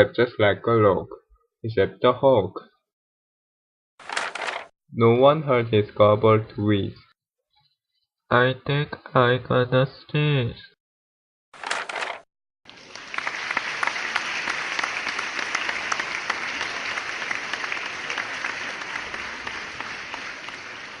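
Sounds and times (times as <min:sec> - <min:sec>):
applause: 0:12.7 - 0:21.0.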